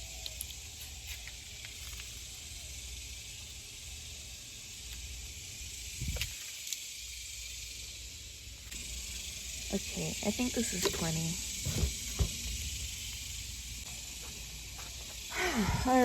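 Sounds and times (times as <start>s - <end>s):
cicadas buzzing: 0.0s - 16.0s
thump: 11.6s - 12.5s.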